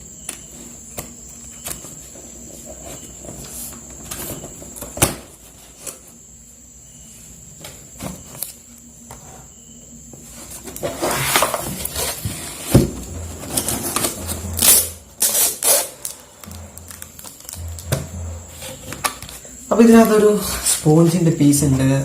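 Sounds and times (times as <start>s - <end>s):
cardboard rustling and scraping: 1.6s - 6.2s, 10.2s - 21.5s.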